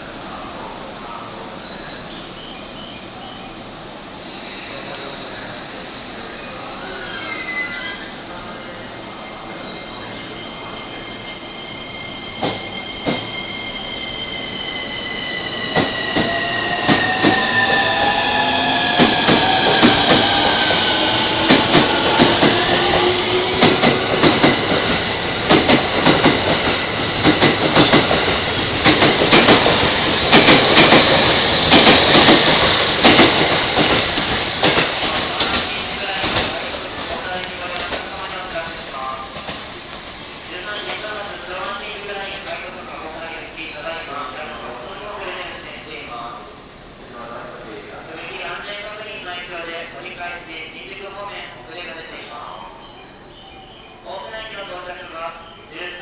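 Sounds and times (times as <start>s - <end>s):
train wheels clattering: 12.3s - 13.4s, 15.6s - 38.2s.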